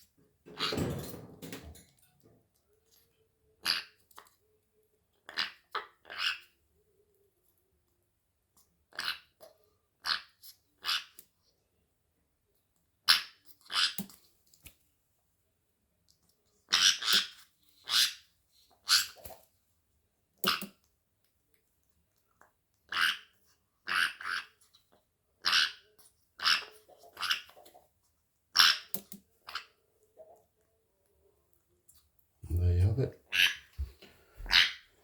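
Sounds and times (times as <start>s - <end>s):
parrot chick raspy begging calls: 22.9s - 24.5s, 34.5s - 34.8s.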